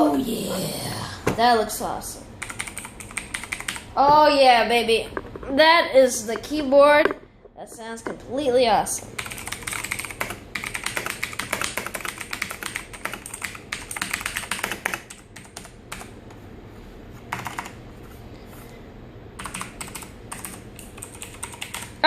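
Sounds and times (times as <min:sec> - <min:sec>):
mechanical keyboard typing: 0:02.4 - 0:03.8, 0:09.2 - 0:16.1, 0:17.3 - 0:17.8, 0:19.4 - 0:21.9.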